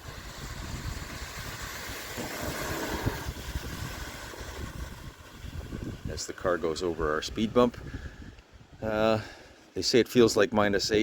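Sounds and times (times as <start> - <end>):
car tyres hissing on wet road: 0.0 - 7.0.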